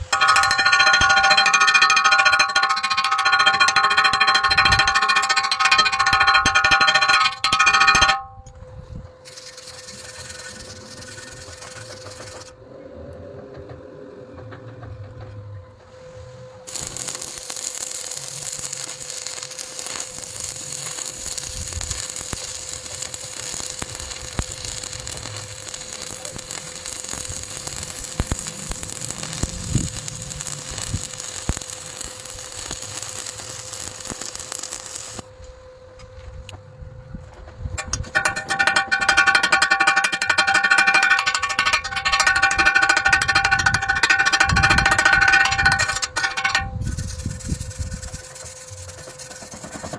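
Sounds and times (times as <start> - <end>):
grinder whining and rasping: 0.0 - 8.5, 37.8 - 49.9
welding arc crackling: 16.7 - 35.3.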